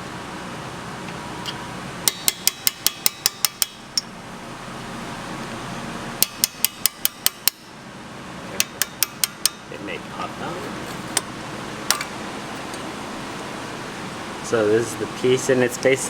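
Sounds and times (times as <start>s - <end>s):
hammer tapping on metal punch: 2.1s - 4.1s, 6.2s - 7.7s, 8.6s - 12.2s.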